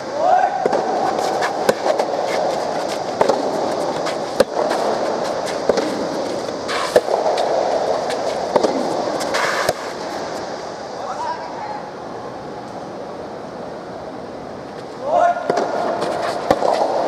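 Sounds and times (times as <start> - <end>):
racket striking ball: 0.6 - 10.5, 15.5 - 17.0.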